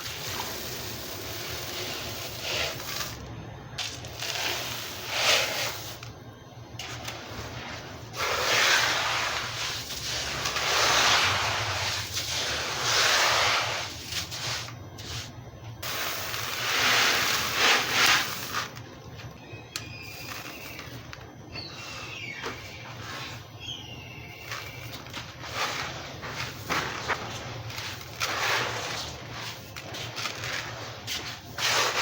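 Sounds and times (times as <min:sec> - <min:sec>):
birds chirping: 0:19.4 - 0:25.0.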